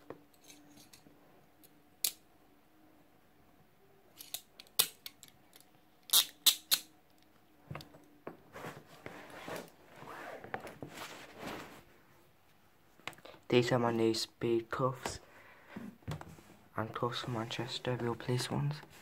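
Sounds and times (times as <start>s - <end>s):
metal handcuffs clicking: 4.2s - 7.3s.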